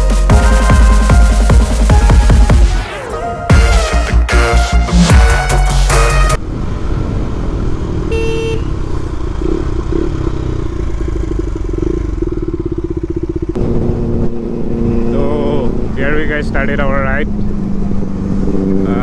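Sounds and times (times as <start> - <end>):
electronic music: 0.0 - 6.4
motorcycle engine running: 7.8 - 16.0.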